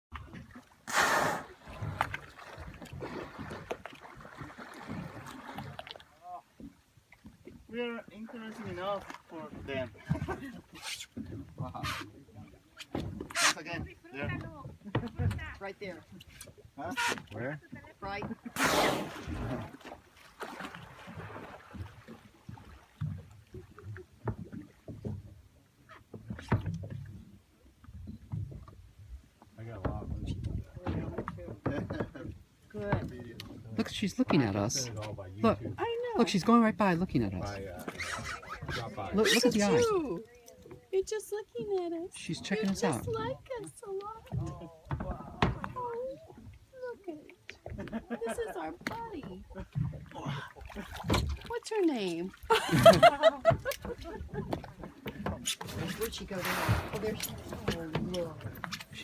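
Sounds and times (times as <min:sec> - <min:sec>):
water lapping against boat hull: 0:00.1 - 0:59.0
sharp knocks on hull: 0:29.8 - 0:33.2, 0:44.2 - 0:45.8, 0:52.9 - 0:58.8.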